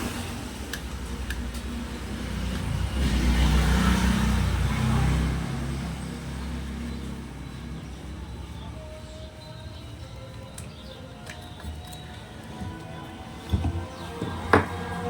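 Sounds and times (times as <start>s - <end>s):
vehicle engine passing by: 0.0s - 9.0s, 12.6s - 15.0s.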